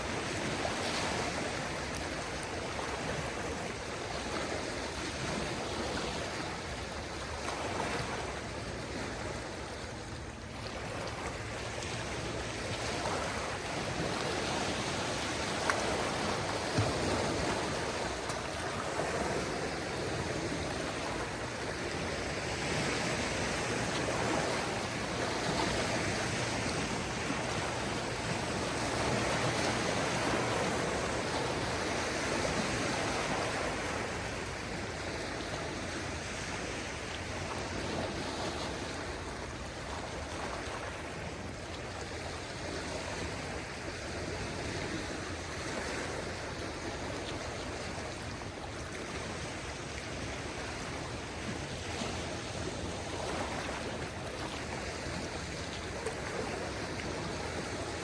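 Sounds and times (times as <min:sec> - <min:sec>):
small waves washing onto shore: 0:00.0 - 0:58.0.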